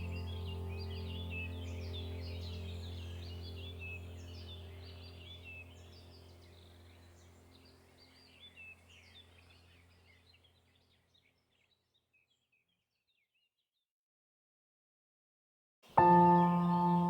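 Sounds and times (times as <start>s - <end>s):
low steady drone: 0.0s - 9.0s.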